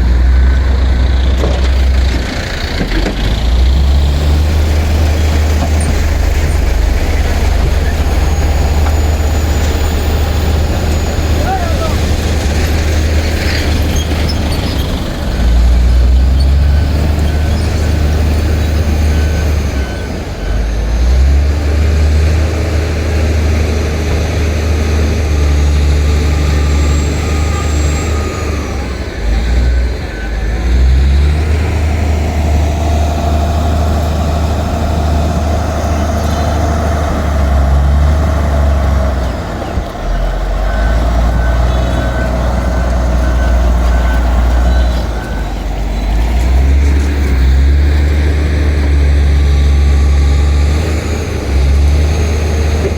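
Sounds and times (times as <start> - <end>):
bulldozer diesel engine: 0.0 - 52.9
back-up alarm beeping: 40.0 - 46.3.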